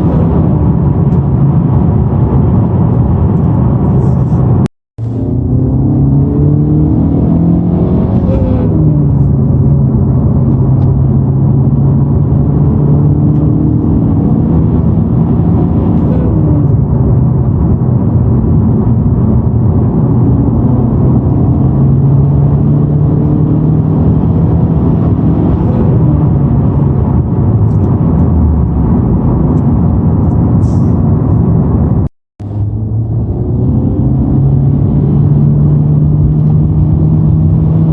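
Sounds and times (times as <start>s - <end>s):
car engine low buzz: 0.0s - 37.9s.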